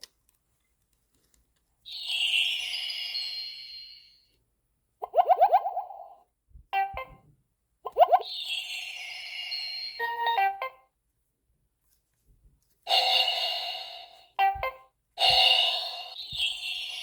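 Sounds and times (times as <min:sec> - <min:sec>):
electronic ringtone chimes: 0:08.0 - 0:10.8.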